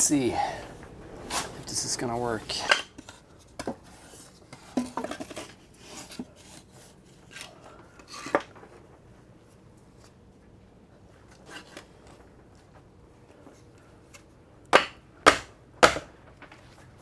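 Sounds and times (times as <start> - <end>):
scraping and rubbing: 0.5 - 7.5.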